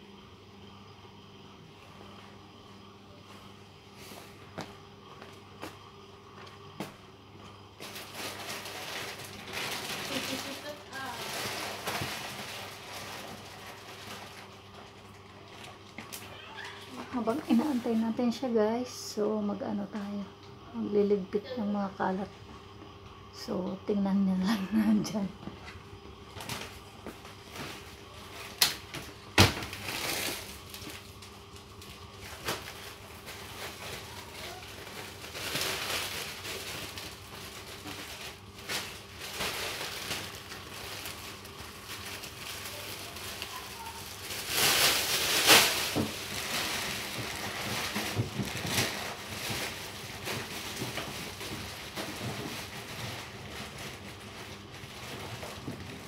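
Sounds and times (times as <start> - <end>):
rustling: 7.8 - 14.9, 32.2 - 56.0.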